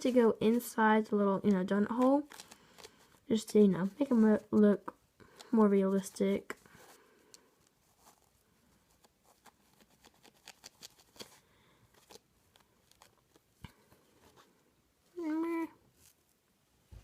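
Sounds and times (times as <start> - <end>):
sponge brush dabbing paint: 3.3 - 6.9.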